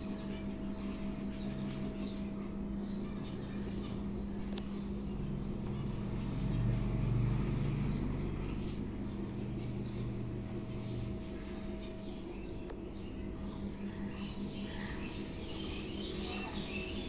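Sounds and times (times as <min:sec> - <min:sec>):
small birds chirping: 0:00.0 - 0:17.0
steady low hum: 0:00.0 - 0:17.0.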